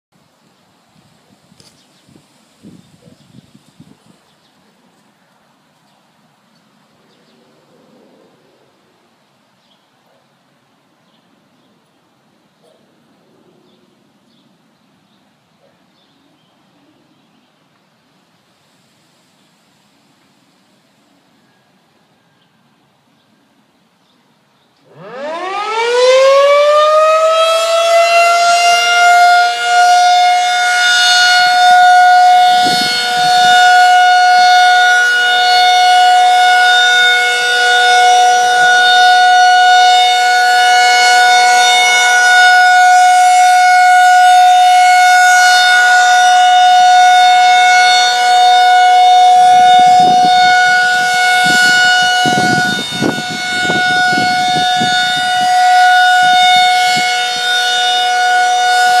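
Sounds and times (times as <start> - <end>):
rotating siren winding up: 24.9 - 28.4, 31.3 - 43.6, 45.6 - 59.0.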